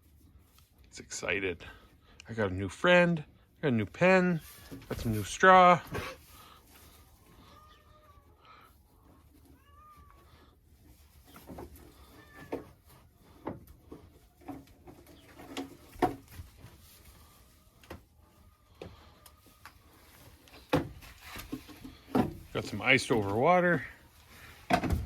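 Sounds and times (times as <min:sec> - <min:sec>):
calves moving in straw: 0:04.3 - 0:13.3, 0:15.1 - 0:24.7.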